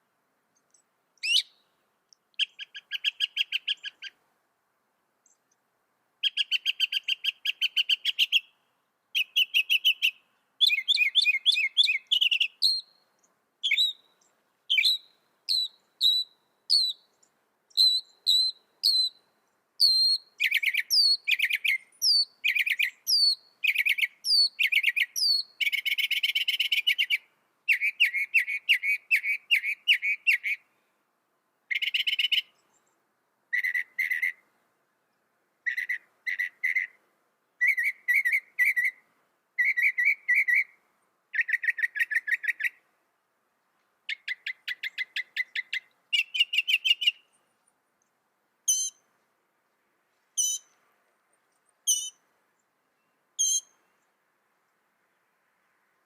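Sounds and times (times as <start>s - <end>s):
mockingbird singing: 0.7s - 1.6s, 2.4s - 4.2s, 6.2s - 13.0s, 13.6s - 19.2s, 19.8s - 30.6s, 37.6s - 39.0s, 39.6s - 42.8s, 44.1s - 47.3s, 48.7s - 49.0s, 50.4s - 50.7s, 51.8s - 52.2s, 53.4s - 53.8s.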